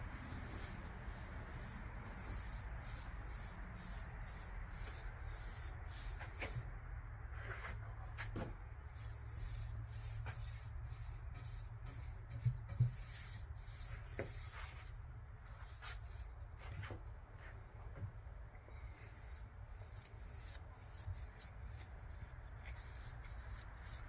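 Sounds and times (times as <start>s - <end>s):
sandpaper rubbing: 0.1s - 6.6s, 8.9s - 16.3s, 19.0s - 24.0s.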